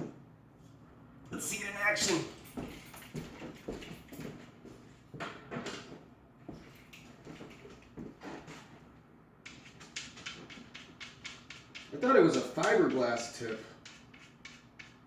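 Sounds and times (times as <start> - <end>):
soft handling knocks and rustles: 2.1 - 9.0.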